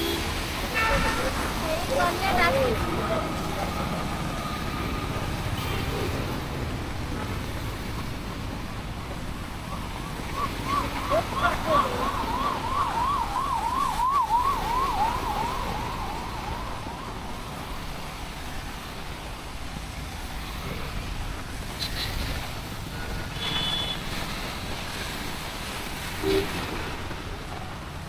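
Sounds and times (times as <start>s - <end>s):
warbling vehicle siren: 0.0s - 19.3s
rain hiss: 0.0s - 28.0s
street traffic: 0.0s - 28.0s.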